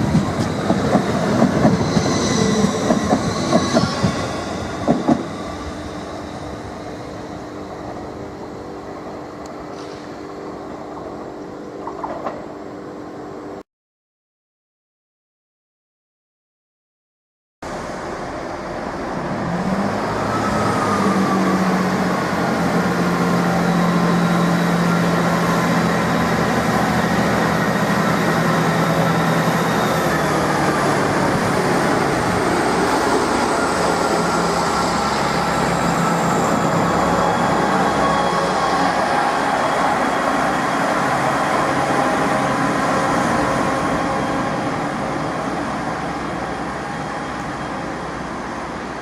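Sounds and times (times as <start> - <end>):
train whine: 0.0 - 13.6, 17.6 - 49.0
train mechanical hum: 4.8 - 13.6, 21.1 - 49.0.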